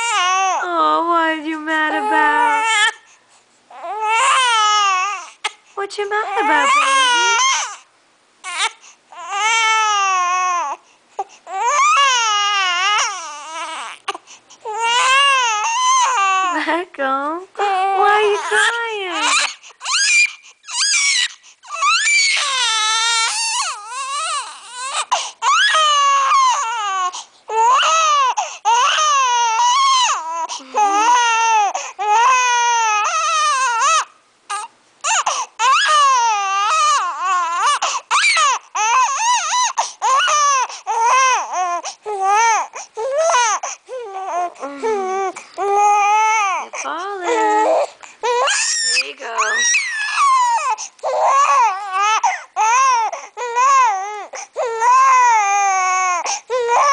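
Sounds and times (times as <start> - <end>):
baby crying: 0.0 - 1.0, 1.7 - 3.1, 3.7 - 16.8, 17.6 - 56.9.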